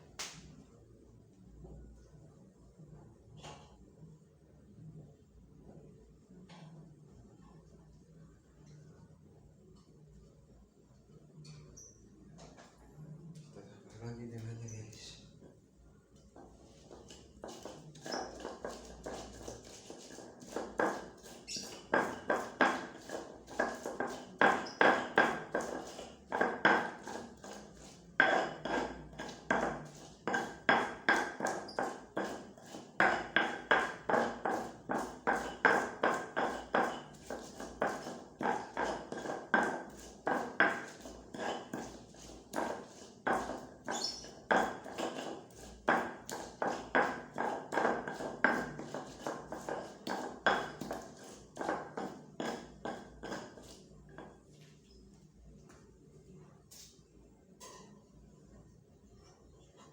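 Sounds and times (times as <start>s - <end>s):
rhythmic kitchen chopping knocks: 16.4s - 53.8s.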